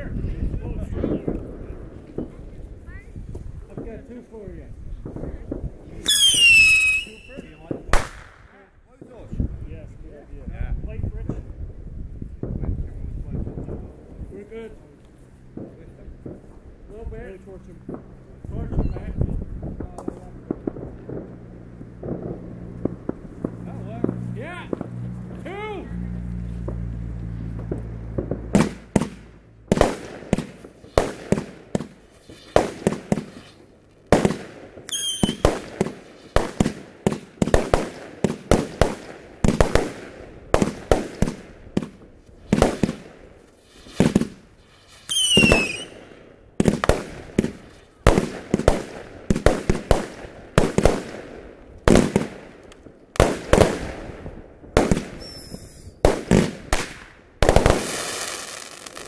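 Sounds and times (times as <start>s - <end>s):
fireworks banging: 0.0s - 9.6s, 11.1s - 59.0s
falling firework whistles: 6.0s - 8.3s, 34.9s - 35.6s, 43.6s - 46.0s, 55.1s - 56.0s.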